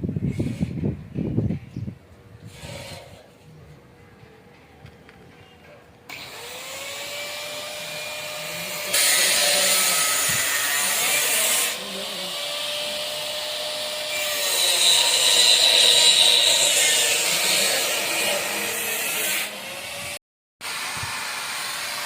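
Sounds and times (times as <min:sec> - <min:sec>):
electric power tool motor: 0:06.1 - 0:22.0.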